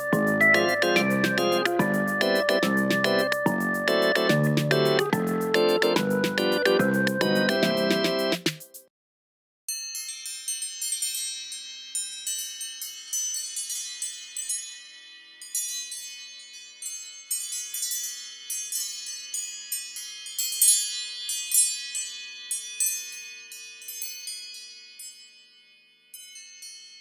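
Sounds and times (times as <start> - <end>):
bright chime ringtone: 0.0 - 8.4.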